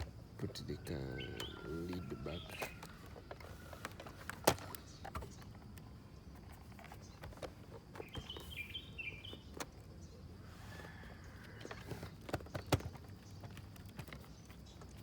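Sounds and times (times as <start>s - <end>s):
bird chirping: 0.0s - 15.0s.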